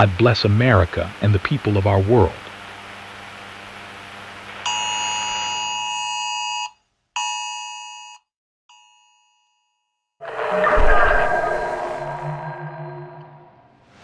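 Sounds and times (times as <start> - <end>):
rain-like hiss: 0.0 - 5.6.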